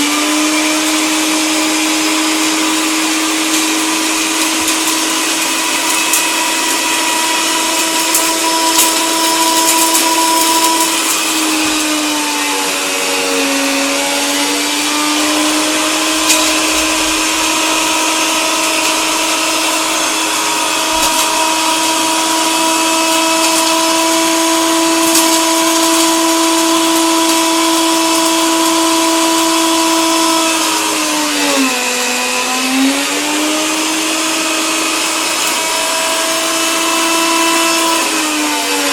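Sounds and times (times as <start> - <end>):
coffee grinder running: 0.0 - 38.9.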